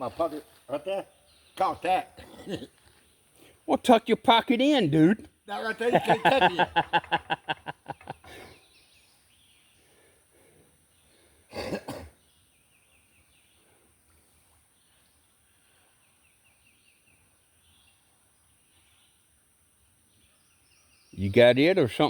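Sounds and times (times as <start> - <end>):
birds chirping: 0.0 - 22.0
outdoor ambience: 0.0 - 22.0
person coughing: 2.2 - 2.7, 11.5 - 12.2.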